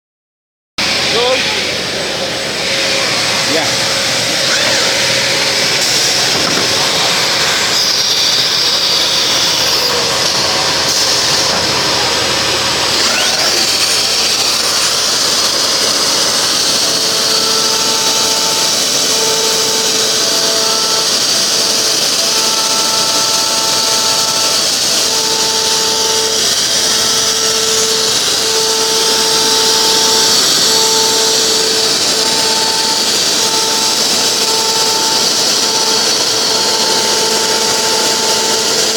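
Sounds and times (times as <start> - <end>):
pitched motor hum: 0.8 - 38.9
machine high-pitched hiss: 2.7 - 38.9.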